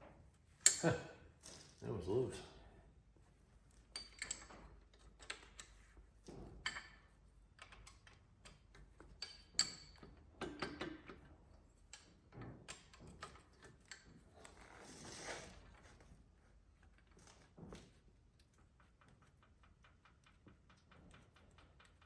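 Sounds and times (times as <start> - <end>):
metal tools clinking and tapping: 0.6 - 1.8, 3.8 - 5.7, 6.3 - 14.2.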